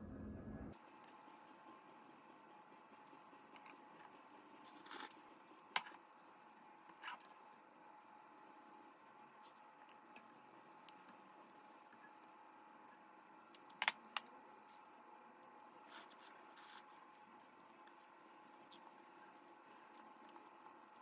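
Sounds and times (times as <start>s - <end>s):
faint steady hum: 0.0s - 21.0s.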